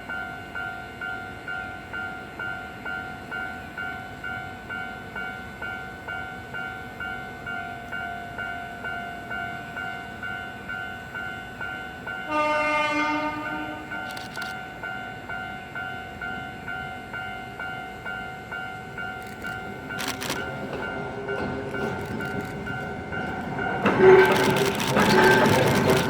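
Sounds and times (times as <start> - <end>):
locomotive horn: 12.3 - 14.0, 23.8 - 26.0.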